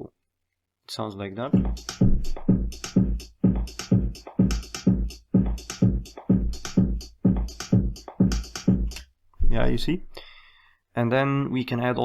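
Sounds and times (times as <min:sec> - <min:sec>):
electronic drum pattern: 0:01.5 - 0:09.9.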